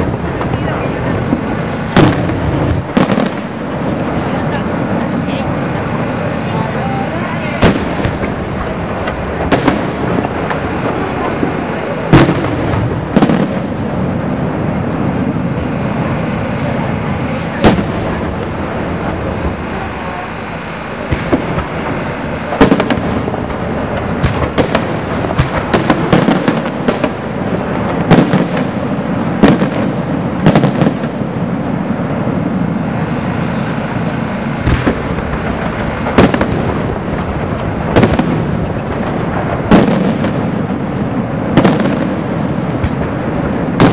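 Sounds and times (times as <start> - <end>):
fireworks crackling: 0.0 - 43.9
loud fireworks bangs: 0.0 - 43.9.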